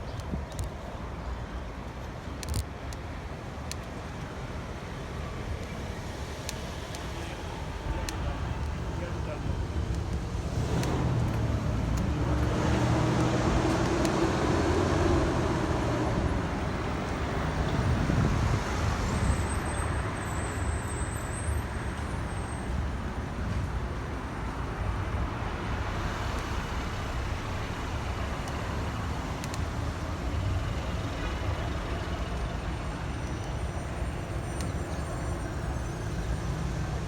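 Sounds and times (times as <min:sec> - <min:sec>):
road traffic: 0:00.0 - 0:37.0
wind noise: 0:09.6 - 0:19.6.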